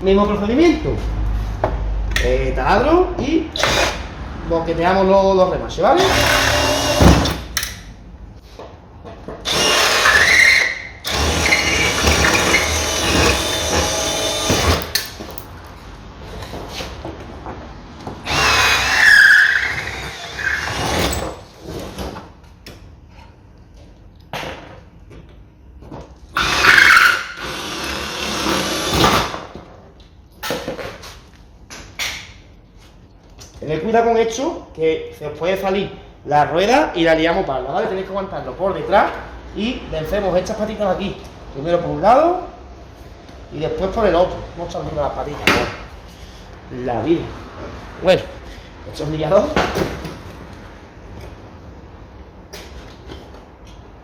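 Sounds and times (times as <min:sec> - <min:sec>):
drill bit squealing on metal: 0:09.5 - 0:15.0, 0:18.3 - 0:21.4, 0:26.4 - 0:29.0.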